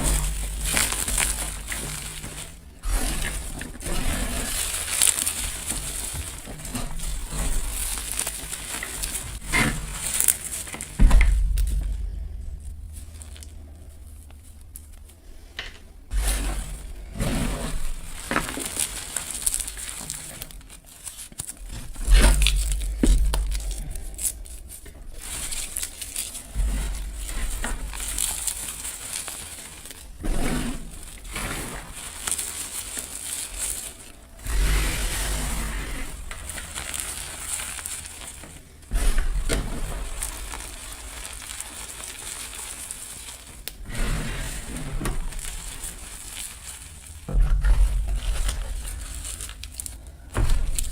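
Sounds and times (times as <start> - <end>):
chalk and petals crunching: 0.0 - 50.9
dull thump: 10.9 - 14.0.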